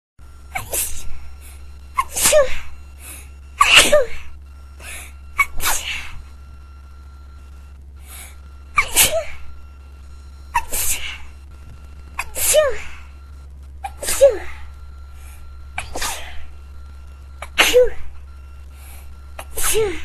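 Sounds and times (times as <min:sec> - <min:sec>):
person sneezing: 0:00.5 - 0:01.2, 0:02.0 - 0:02.7, 0:03.6 - 0:06.2, 0:08.8 - 0:09.4, 0:10.5 - 0:11.3, 0:12.2 - 0:13.0, 0:13.8 - 0:14.6, 0:15.8 - 0:16.5, 0:17.4 - 0:18.1, 0:19.4 - 0:20.0.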